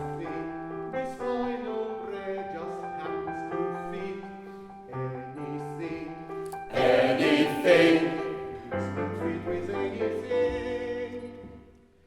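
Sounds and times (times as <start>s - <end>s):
piano accompaniment: 0.0s - 12.0s
group of voices singing: 6.6s - 11.2s.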